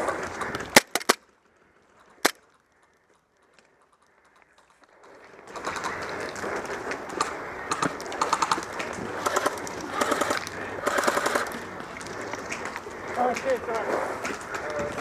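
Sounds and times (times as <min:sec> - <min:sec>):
airsoft gunfire clicking: 0:00.4 - 0:01.2, 0:02.1 - 0:02.5, 0:07.2 - 0:11.6.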